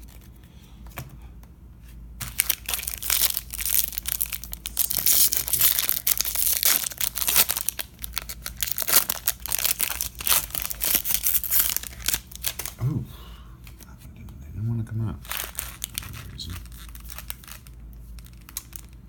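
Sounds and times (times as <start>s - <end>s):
wrapper tearing and crinkling: 2.2s - 12.8s, 15.2s - 19.0s.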